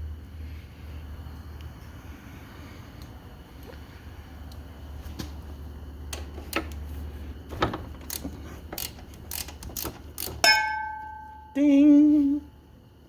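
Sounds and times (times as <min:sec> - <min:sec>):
steady low hum: 0:00.0 - 0:13.0
hand ratchet clicking: 0:08.0 - 0:10.6.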